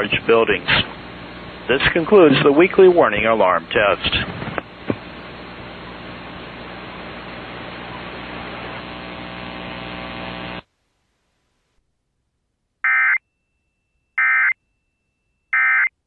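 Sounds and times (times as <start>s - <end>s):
radio static hiss with hum: 0.0s - 11.8s.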